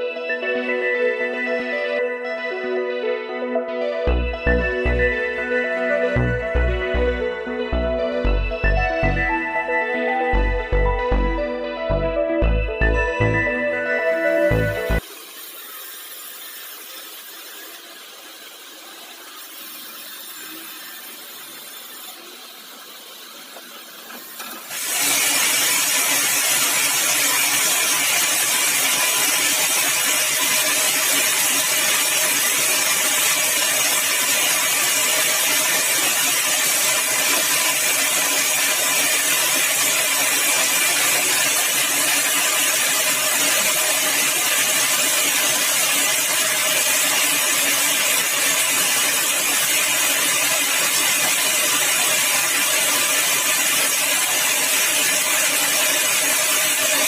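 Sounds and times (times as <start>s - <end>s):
sawmill saw cutting log: 14.6s - 57.0s.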